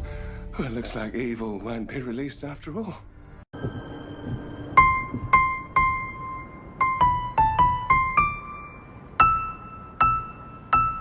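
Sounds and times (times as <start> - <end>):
soft piano melody: 3.6 - 11.0.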